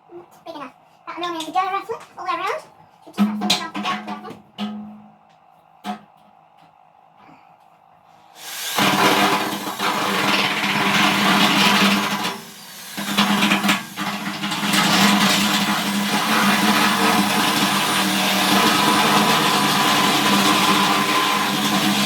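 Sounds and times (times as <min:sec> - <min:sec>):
power tool grinding sheet metal: 0:08.4 - 0:22.0.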